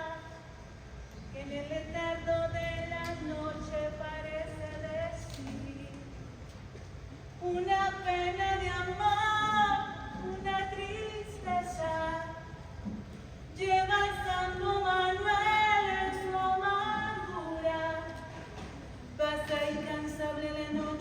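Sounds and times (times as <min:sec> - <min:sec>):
woman singing unaccompanied: 0:00.0 - 0:00.6, 0:01.3 - 0:06.4, 0:07.4 - 0:12.8, 0:13.5 - 0:21.0.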